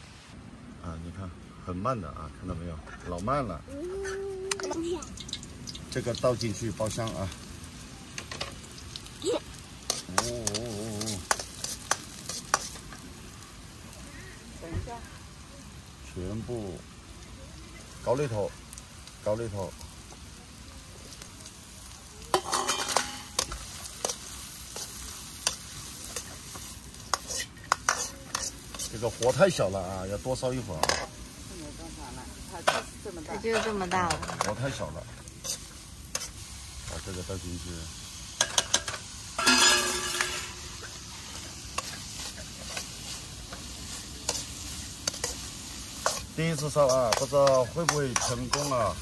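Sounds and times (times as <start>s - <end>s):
light sizzle: 0.0s - 49.0s
spatula scraping a wok: 9.5s - 13.4s, 22.3s - 31.6s, 32.4s - 37.1s, 38.2s - 49.0s.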